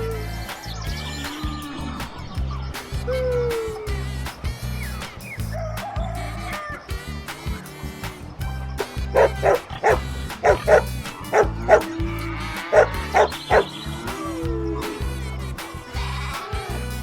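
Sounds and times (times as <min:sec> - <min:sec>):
background music with a beat: 0:00.0 - 0:17.0
dog barking: 0:09.1 - 0:12.0, 0:12.7 - 0:13.7.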